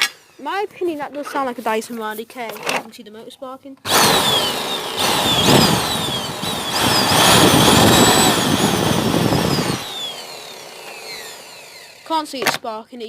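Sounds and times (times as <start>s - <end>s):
vacuum cleaner motor whine: 3.9s - 12.2s.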